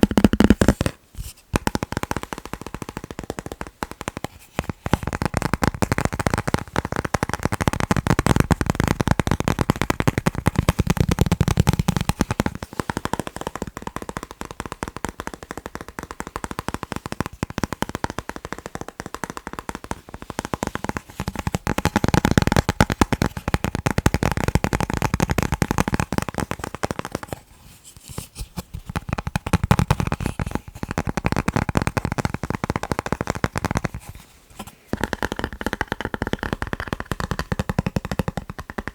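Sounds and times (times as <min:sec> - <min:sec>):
fingers tapping on chocolate: 0:00.0 - 0:27.4, 0:28.6 - 0:38.9.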